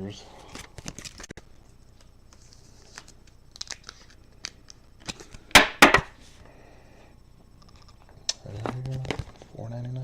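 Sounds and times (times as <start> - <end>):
trading cards handled: 2.0 - 5.5.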